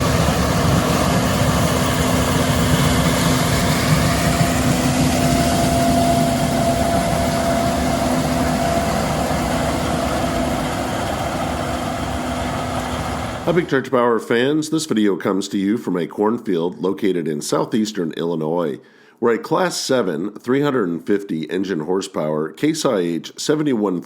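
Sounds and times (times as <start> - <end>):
combine harvester droning: 0.0 - 13.9.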